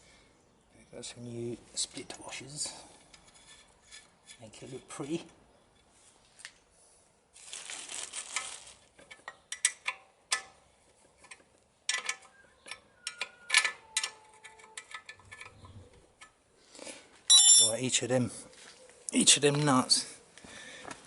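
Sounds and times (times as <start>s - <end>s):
rummaging small steel parts: 7.4s - 10.5s, 11.1s - 15.8s
sharp metallic clinks: 17.3s - 17.8s.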